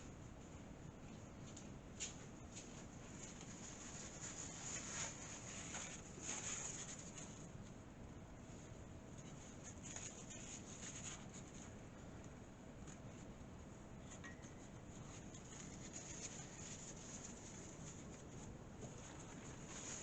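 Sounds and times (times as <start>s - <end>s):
light rubbing and scratching: 2.6s - 7.7s, 8.4s - 12.2s, 12.8s - 20.0s.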